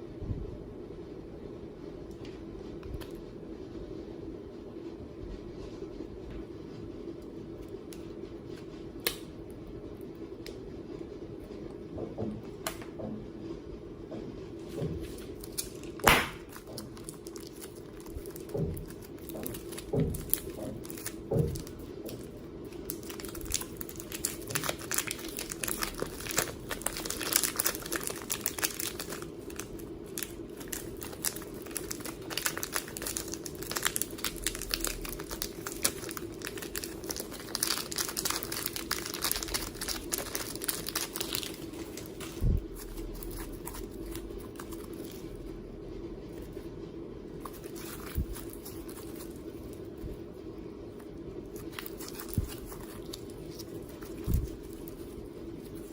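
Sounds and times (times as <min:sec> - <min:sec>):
faint steady hum: 0:00.0 - 0:55.9
slime crackling and crinkling: 0:15.0 - 0:45.6, 0:47.4 - 0:50.3, 0:51.0 - 0:55.9.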